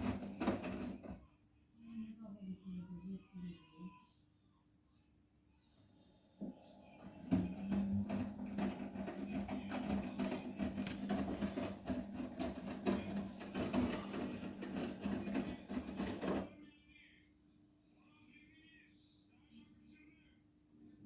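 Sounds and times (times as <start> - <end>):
wet laundry tumbling with knocks: 0.0 - 1.2, 7.0 - 16.5
washing machine motor hum: 0.0 - 1.3, 5.8 - 16.6.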